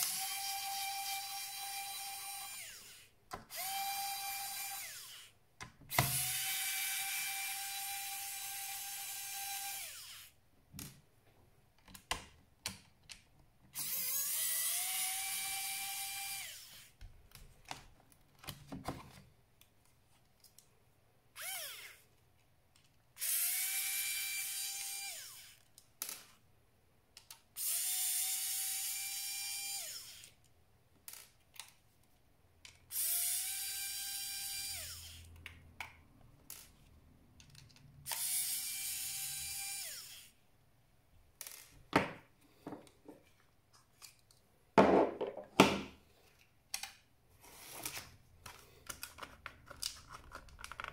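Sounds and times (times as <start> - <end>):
electric screwdriver whine: 0.0 - 5.3, 13.8 - 17.0, 21.4 - 22.0, 23.2 - 25.6, 27.6 - 30.3, 32.9 - 35.3, 38.1 - 40.4.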